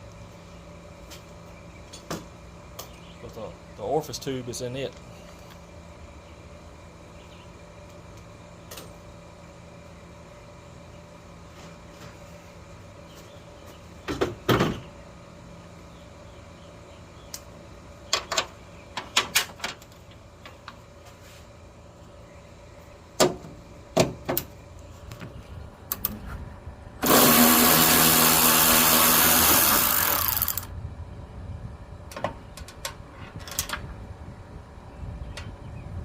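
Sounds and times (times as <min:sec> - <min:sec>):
power drill whirring: 0:27.0 - 0:30.7.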